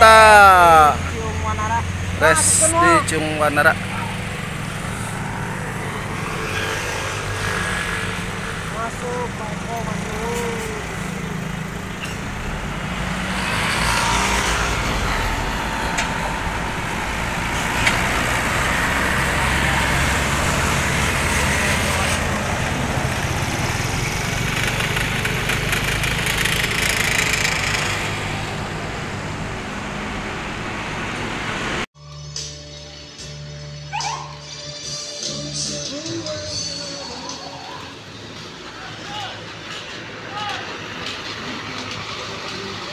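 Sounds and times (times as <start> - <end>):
bus diesel engine running: 0.0 - 31.9
road noise: 0.0 - 42.9.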